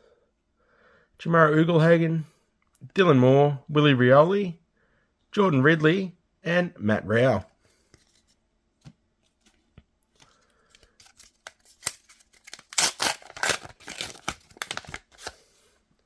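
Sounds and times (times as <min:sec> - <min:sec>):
foil wrapper tearing and crinkling: 0:10.9 - 0:15.4.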